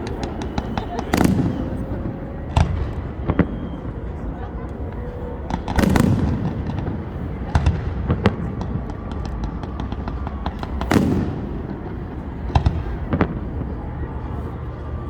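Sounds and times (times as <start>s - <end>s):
distant fireworks rumble: 0.0s - 15.0s
fireworks banging: 0.0s - 15.0s
firework boom: 5.5s - 14.4s.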